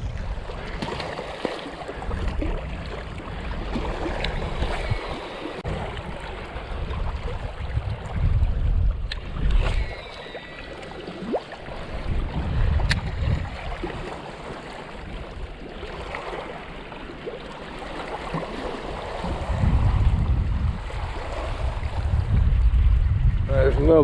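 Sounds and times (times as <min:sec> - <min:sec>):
wind gusting over microphone: 0:00.0 - 0:01.1, 0:01.9 - 0:14.2, 0:18.9 - 0:24.0
rushing water: 0:00.0 - 0:22.3.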